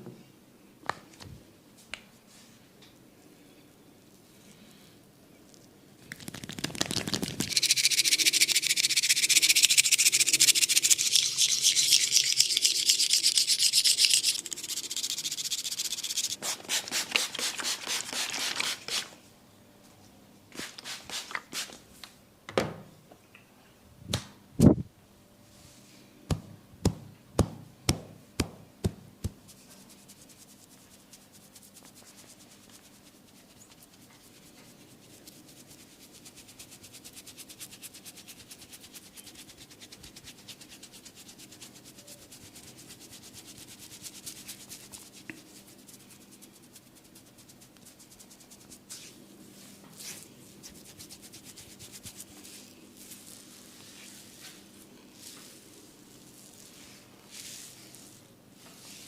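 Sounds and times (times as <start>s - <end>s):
rubbing on skin and hair: 6.2s - 19.2s, 20.6s - 21.8s, 29.2s - 59.0s
patter of massage strokes: 29.2s - 59.0s.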